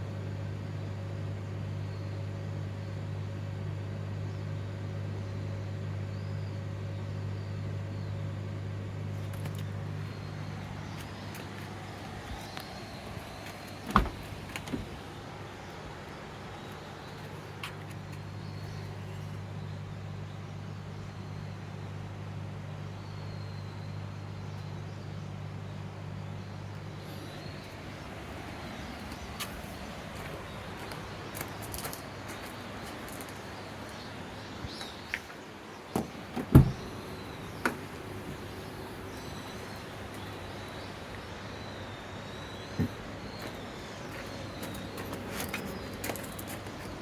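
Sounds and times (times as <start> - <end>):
steady background hum: 0.0 - 47.0
light clicks and knocks: 13.4 - 15.0
heavy thump: 13.9 - 14.9, 36.0 - 36.9.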